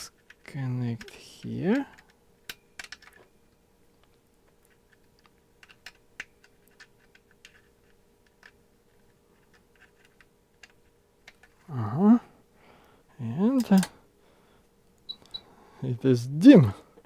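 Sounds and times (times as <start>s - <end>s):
faint steady hum: 0.0s - 17.0s
small clicks of handling parts: 0.1s - 11.7s, 13.6s - 14.0s.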